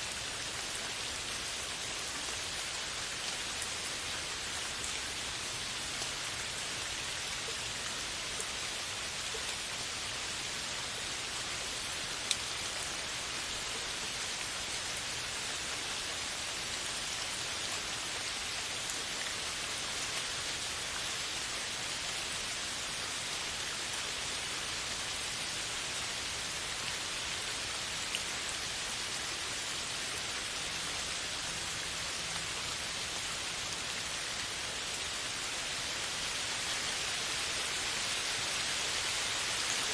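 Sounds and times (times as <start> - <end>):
steady rain on forest canopy: 0.0 - 39.9.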